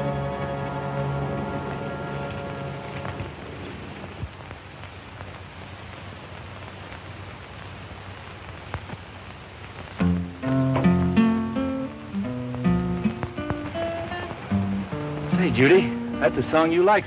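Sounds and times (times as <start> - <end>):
acoustic guitar strumming chords: 0.0 - 3.4, 10.0 - 17.0
old film soundtrack hiss: 0.0 - 17.0
faint clicks: 2.2 - 11.2, 11.8 - 15.3.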